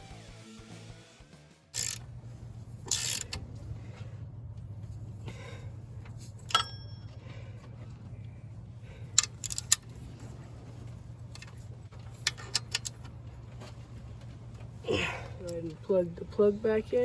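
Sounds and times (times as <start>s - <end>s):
steady low hum: 1.8s - 17.0s
metal hand tools clinking: 6.4s - 7.2s.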